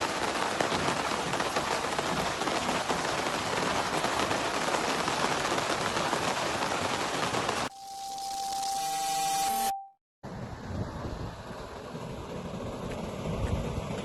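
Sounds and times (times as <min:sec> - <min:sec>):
heavy rain pouring: 0:00.0 - 0:09.7.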